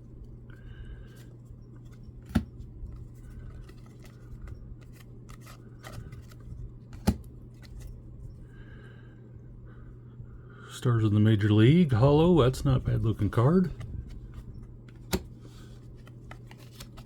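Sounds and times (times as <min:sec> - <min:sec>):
steady low hum: 0:00.0 - 0:17.0
card pack rustling: 0:01.8 - 0:07.9, 0:13.2 - 0:17.0.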